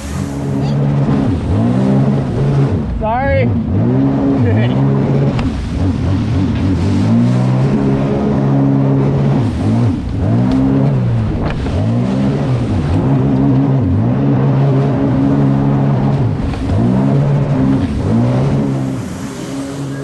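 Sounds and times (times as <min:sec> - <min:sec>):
watercraft engine revving: 0:00.0 - 0:20.0.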